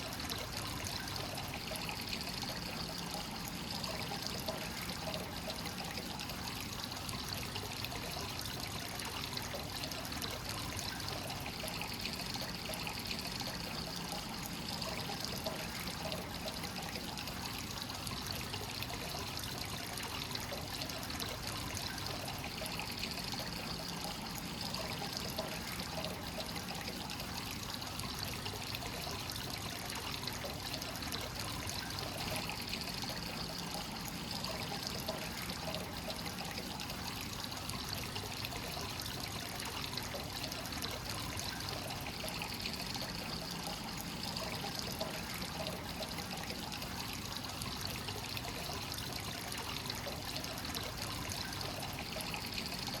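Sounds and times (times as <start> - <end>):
hot spring water pouring into bath: 0.0 - 53.0.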